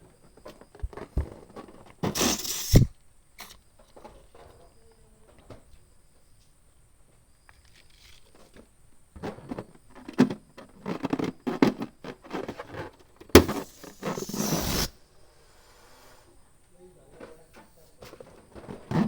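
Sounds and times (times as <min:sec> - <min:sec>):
balloons squeaking and rustling: 0:00.9 - 0:02.9, 0:13.0 - 0:15.0
loud rushing hiss: 0:02.0 - 0:02.9, 0:13.4 - 0:16.3
balloon popping snap: 0:02.1 - 0:02.9, 0:13.4 - 0:15.0.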